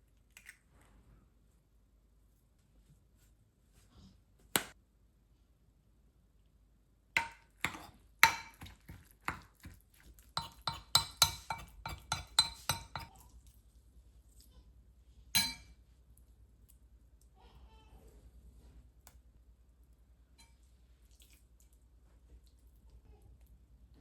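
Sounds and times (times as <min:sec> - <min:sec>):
utensils clinking against a pot: 0:10.4 - 0:13.2, 0:15.4 - 0:15.8.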